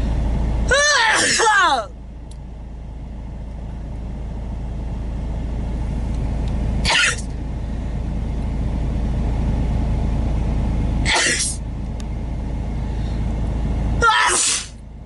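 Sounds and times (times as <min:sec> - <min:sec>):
car driving rumble: 0:00.0 - 0:15.0
person sneezing: 0:01.0 - 0:01.6, 0:06.8 - 0:07.3, 0:11.1 - 0:11.6, 0:14.1 - 0:14.8.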